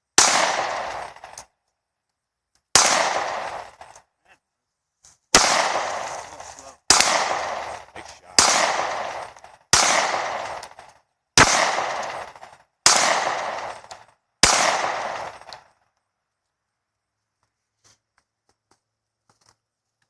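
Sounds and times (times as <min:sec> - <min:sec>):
gunshots with long echo: 0:00.0 - 0:01.5, 0:02.7 - 0:04.0, 0:05.3 - 0:15.8.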